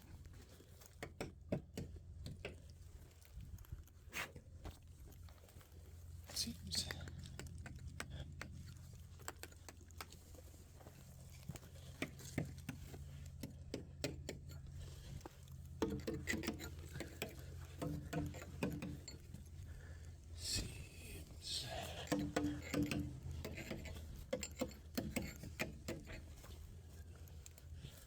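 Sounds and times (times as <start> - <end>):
light tapping on wooden siding: 15.8 - 19.3, 22.0 - 26.3.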